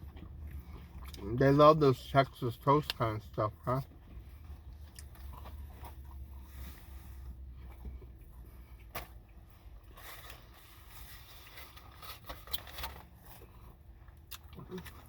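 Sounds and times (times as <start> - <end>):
chewing: 0.0 - 1.4, 3.7 - 6.8, 12.5 - 15.0.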